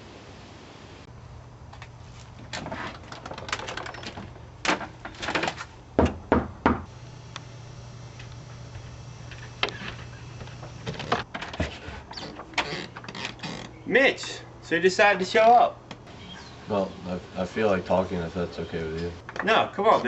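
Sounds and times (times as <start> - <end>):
clatter and handling noise: 1.7 - 5.8, 8.1 - 13.7
knocks on a door: 6.0 - 6.9
steady low hum: 6.9 - 12.5.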